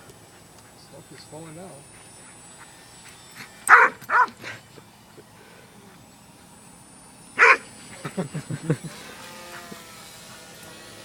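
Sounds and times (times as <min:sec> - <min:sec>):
dog barking: 0:03.7 - 0:04.4, 0:07.4 - 0:07.6.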